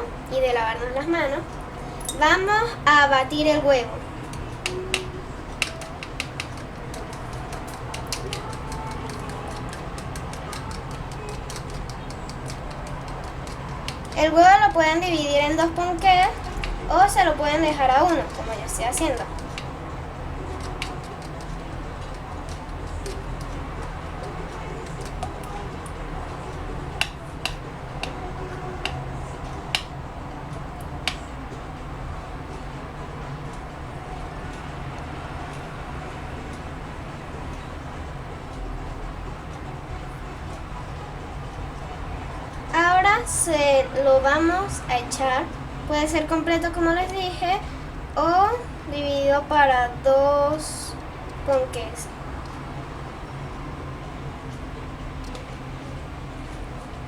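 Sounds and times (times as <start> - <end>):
steady low hum: 0.0 - 57.0
whisk clicking against a bowl: 3.2 - 31.3.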